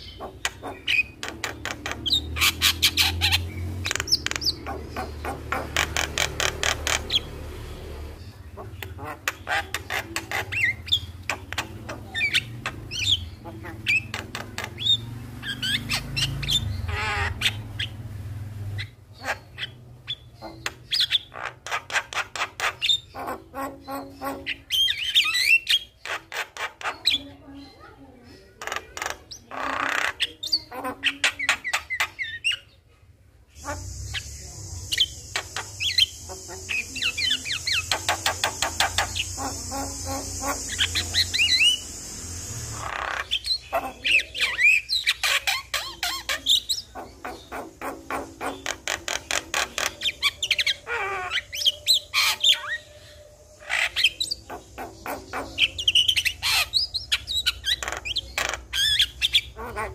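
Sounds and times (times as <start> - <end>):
myna singing chattering squawks: 0.0 - 32.9, 33.5 - 59.9
background hiss: 33.5 - 43.7.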